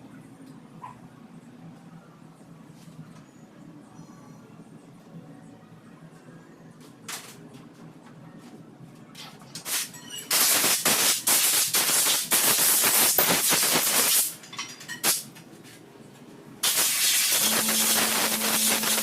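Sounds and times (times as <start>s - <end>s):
compressed-air blow gun hissing: 16.6s - 19.0s.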